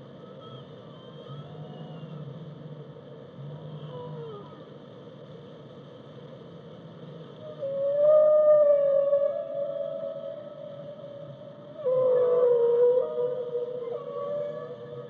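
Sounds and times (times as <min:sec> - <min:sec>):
high whale calls: 0:07.6 - 0:15.0
whale moans: 0:07.6 - 0:15.0.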